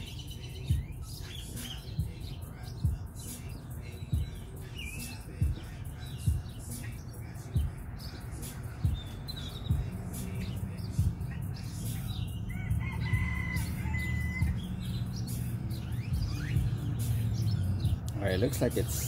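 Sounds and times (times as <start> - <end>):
small birds chirping: 0.0 - 19.0
rooster crowing: 12.4 - 14.8.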